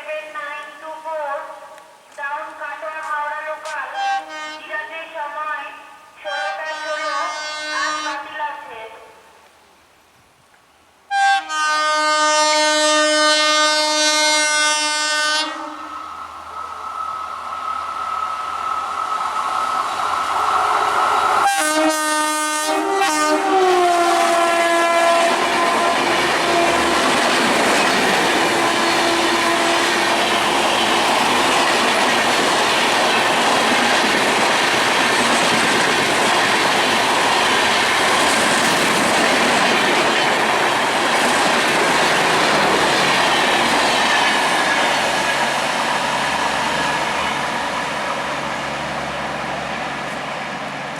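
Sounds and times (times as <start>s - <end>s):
train horn blast: 3.9s - 4.8s, 6.2s - 8.3s, 11.1s - 16.1s, 20.7s - 27.1s, 28.5s - 30.4s
train coaches rolling by: 12.4s - 50.9s.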